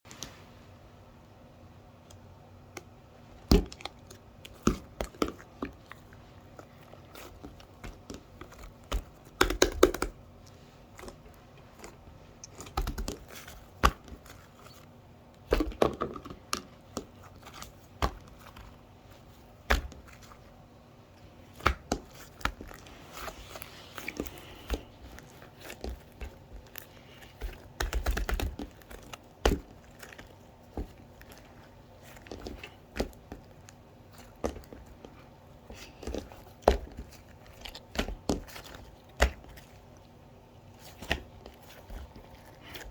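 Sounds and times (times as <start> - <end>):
paper or plastic crinkling: 22.0 - 42.9.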